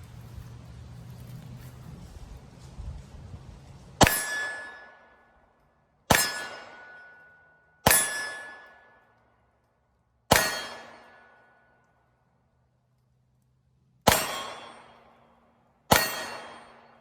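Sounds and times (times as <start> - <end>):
pistol shots: 10.3 - 11.4, 14.1 - 15.2, 15.9 - 17.0.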